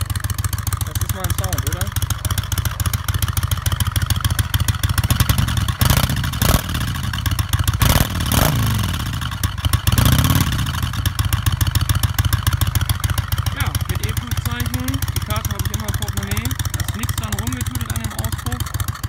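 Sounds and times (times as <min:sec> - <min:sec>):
motorcycle engine idling and revving: 0:00.0 - 0:19.0.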